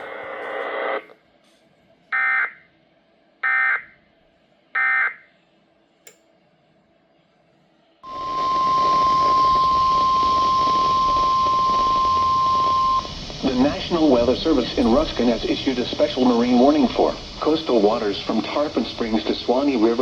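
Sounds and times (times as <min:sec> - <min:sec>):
radio hiss: 0:00.0 - 0:01.2, 0:08.0 - 0:20.0
high warning alarm tone: 0:02.1 - 0:02.6, 0:03.4 - 0:04.0, 0:04.8 - 0:05.3, 0:08.0 - 0:14.2
buzzy digital data bursts: 0:08.1 - 0:19.8.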